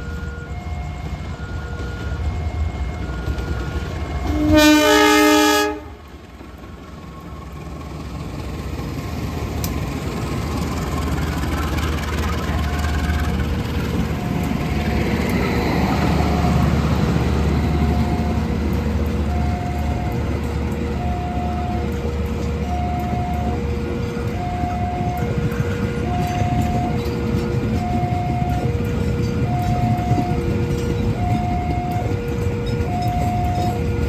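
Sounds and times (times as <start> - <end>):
train wheels rumbling on rails: 0.0 - 34.0
train horn chord: 4.2 - 6.1.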